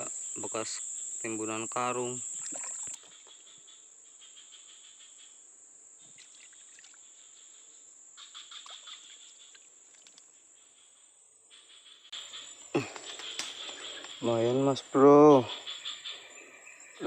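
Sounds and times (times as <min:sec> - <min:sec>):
rapid insect pulsing: 0:00.0 - 0:05.4, 0:06.0 - 0:17.0
crickets chirping: 0:00.0 - 0:17.0.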